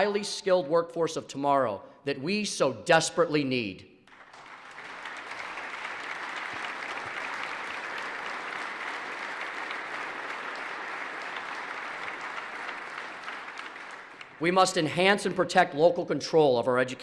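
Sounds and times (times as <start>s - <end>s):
applause: 4.1s - 15.5s.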